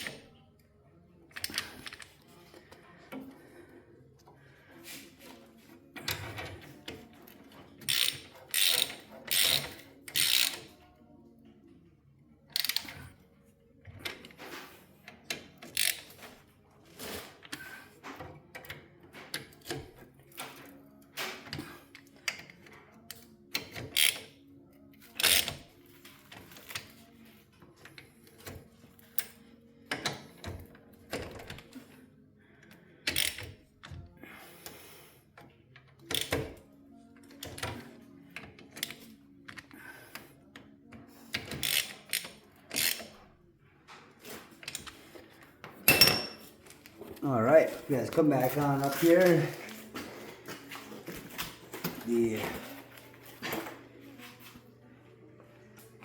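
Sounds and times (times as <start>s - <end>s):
ratchet wrench clicking: 7.8s - 10.7s, 12.6s - 12.9s, 15.7s - 16.1s, 23.6s - 24.3s, 25.2s - 25.6s, 33.1s - 33.6s, 41.4s - 43.1s.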